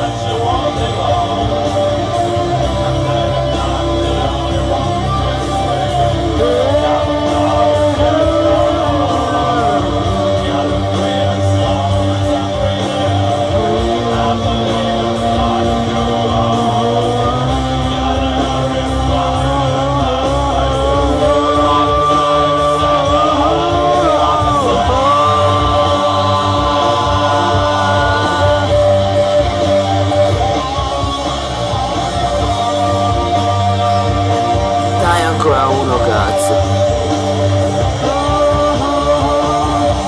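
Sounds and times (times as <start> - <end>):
person singing: 35.0 - 36.7.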